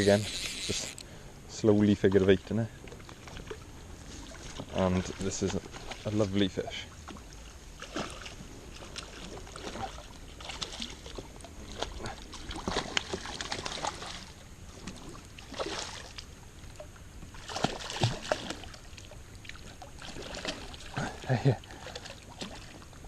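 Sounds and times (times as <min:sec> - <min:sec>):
fish splashing at water surface: 0:07.8 - 0:22.8.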